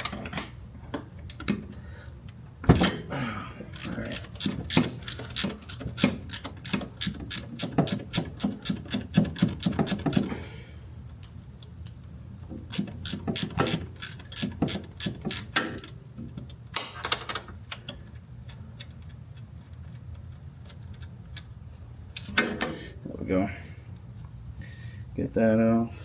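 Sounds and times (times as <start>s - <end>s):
hand ratchet clicking: 3.8s - 10.3s, 12.7s - 15.9s.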